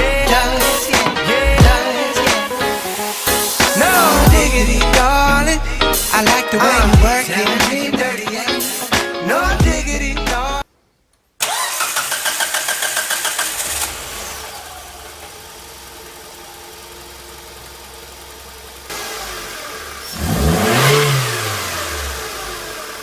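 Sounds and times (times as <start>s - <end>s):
car engine starting and idling: 0.0s - 1.8s, 2.6s - 7.4s, 11.4s - 23.0s
engine revving: 0.0s - 7.0s, 11.4s - 23.0s.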